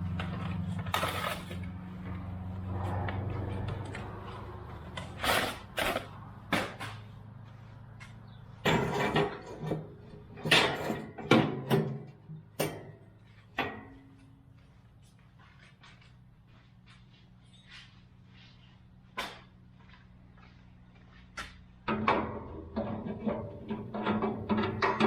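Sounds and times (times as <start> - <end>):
grill parts clattering: 8.6 - 13.0, 21.8 - 25.0.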